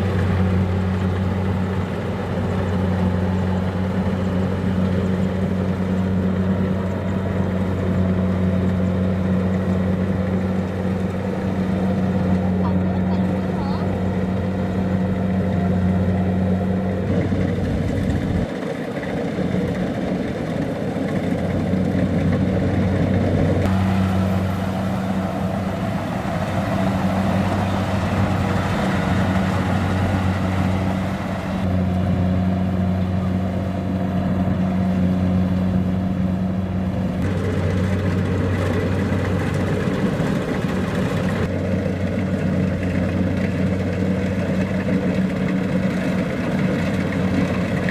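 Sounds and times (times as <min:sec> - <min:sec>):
diesel engine running: 0:00.0 - 0:47.9
machinery clatter: 0:36.9 - 0:47.9.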